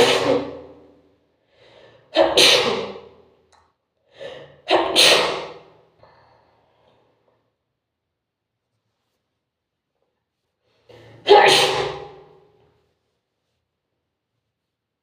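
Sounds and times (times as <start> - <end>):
person sneezing: 0.0 - 0.9, 2.0 - 3.2, 4.2 - 5.8, 10.9 - 12.5.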